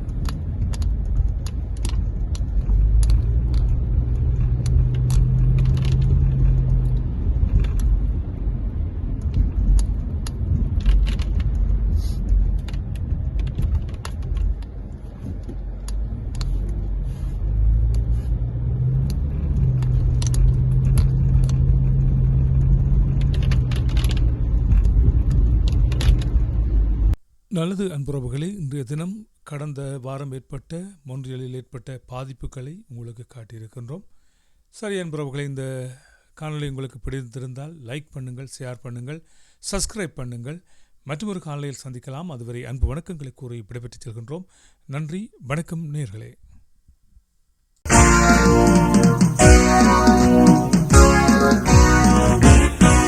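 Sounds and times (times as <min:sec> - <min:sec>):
sharp clicks and ticks: 0:00.0 - 0:08.0
car engine and road noise: 0:00.0 - 0:27.4, 0:47.9 - 0:53.0.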